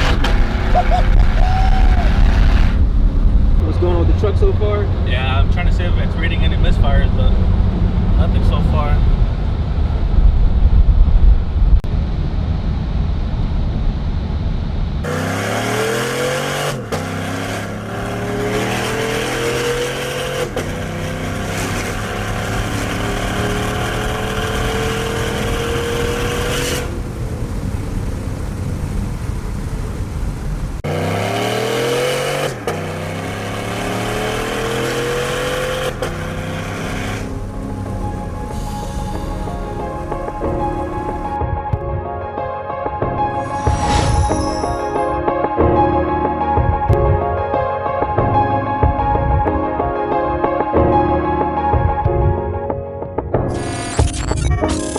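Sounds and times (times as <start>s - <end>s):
pickup engine accelerating through gears: 0.0s - 41.4s.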